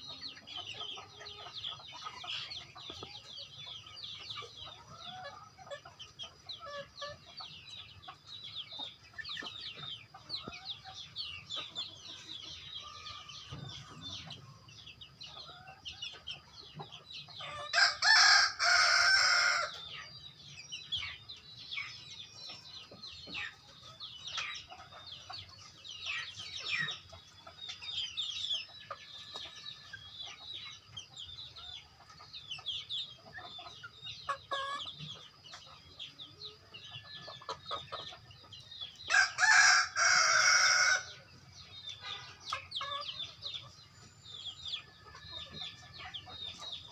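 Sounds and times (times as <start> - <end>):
chickens clucking and peeping: 0.0 - 46.9
rooster crowing: 17.7 - 19.7, 39.1 - 41.1.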